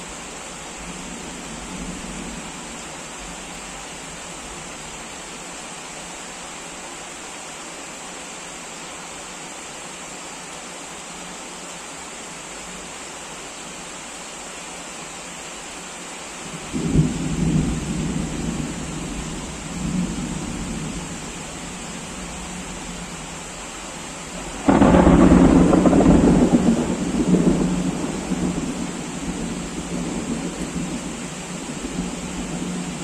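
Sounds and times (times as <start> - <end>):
heavy rain: 0.0 - 33.0
thunder clap and rumble: 24.5 - 33.0.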